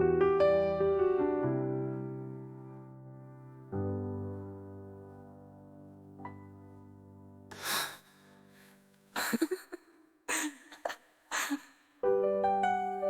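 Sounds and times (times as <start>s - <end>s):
piano chords: 0.0s - 7.5s, 12.0s - 13.0s
breathy vocal gasps: 7.5s - 9.6s.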